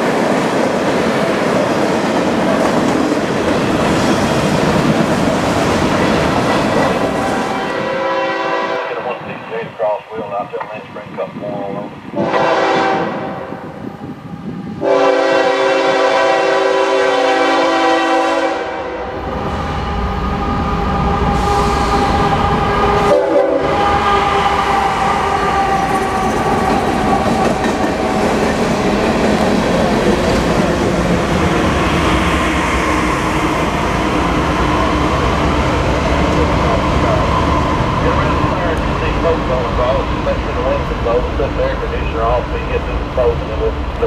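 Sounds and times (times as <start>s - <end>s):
freight train rumbling past: 0.0s - 44.0s
locomotive horn blasts: 7.5s - 9.1s, 12.2s - 13.4s, 14.8s - 19.1s, 23.1s - 23.8s.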